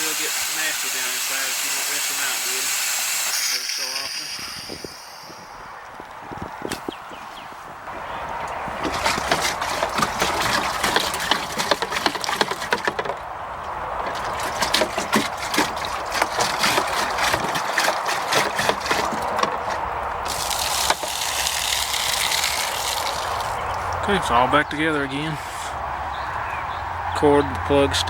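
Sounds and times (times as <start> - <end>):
water splashing in plastic bucket: 8.5 - 24.0
plastic bucket knocking and rattling: 8.7 - 13.3, 14.0 - 21.3.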